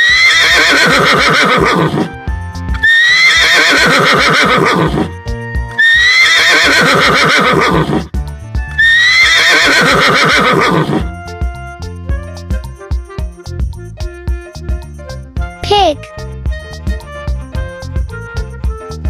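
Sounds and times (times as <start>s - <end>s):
horse whinnying: 0.0s - 2.2s, 2.8s - 8.2s, 8.8s - 11.1s
background music: 0.0s - 19.0s.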